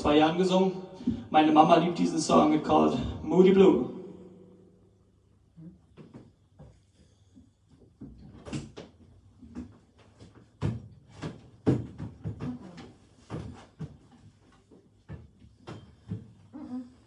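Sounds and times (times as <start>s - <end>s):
knocks and thumps of handling: 7.8s - 16.5s.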